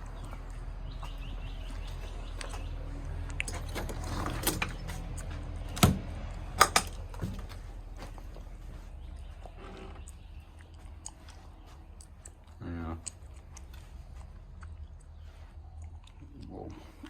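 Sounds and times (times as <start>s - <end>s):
low steady rumble: 0.0s - 17.0s.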